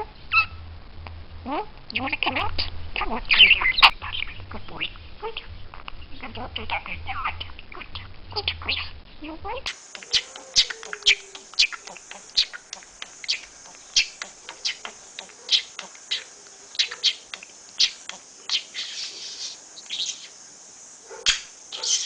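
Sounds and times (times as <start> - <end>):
budgerigar chirping: 0.3 - 0.6, 3.2 - 8.9, 9.7 - 20.4, 21.1 - 22.0
budgerigar warbling chatter: 3.2 - 8.9, 9.7 - 20.4, 21.1 - 22.0.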